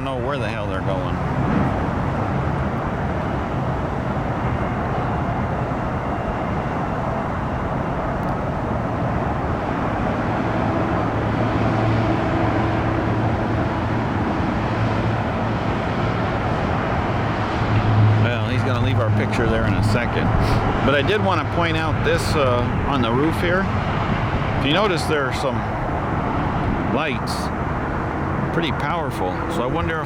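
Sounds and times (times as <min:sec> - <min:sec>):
low engine hum: 0:00.0 - 0:30.0
traffic noise: 0:00.0 - 0:30.0.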